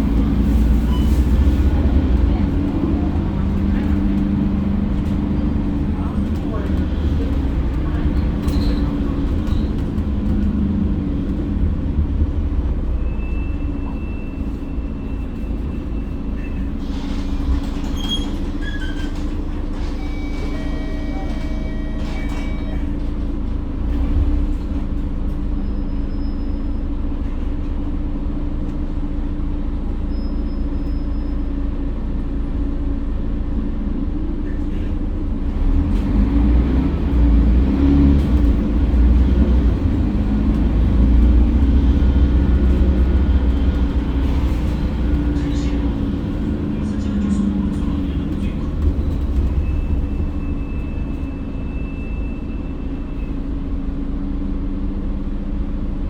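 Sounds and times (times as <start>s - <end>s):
bus engine drone: 0.0s - 56.0s.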